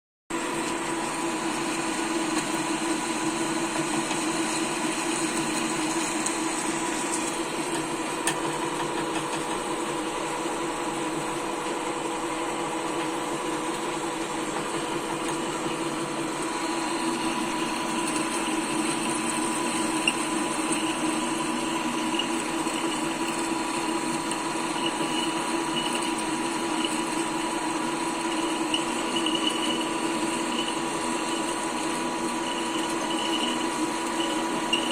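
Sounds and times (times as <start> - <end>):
machine tool motor hum: 2.4 - 26.6.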